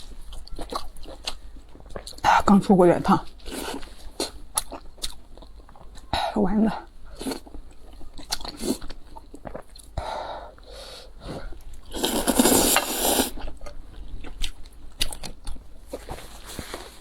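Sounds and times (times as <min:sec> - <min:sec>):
wet chewing: 0:00.0 - 0:17.0
noodle slurping: 0:11.2 - 0:13.5.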